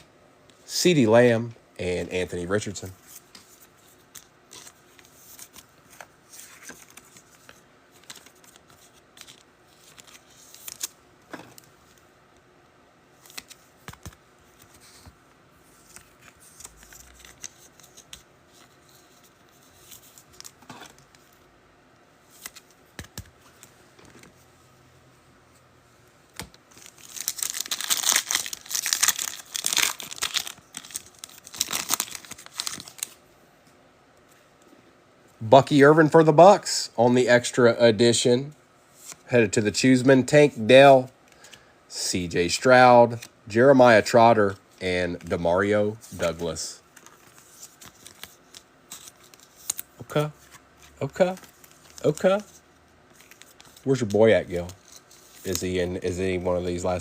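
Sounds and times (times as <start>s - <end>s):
cards rustling and clicking: 2.6s - 12.0s, 13.2s - 21.4s, 22.2s - 24.4s, 26.3s - 33.2s, 44.4s - 56.8s
foil wrapper crinkling and tearing: 26.7s - 33.2s.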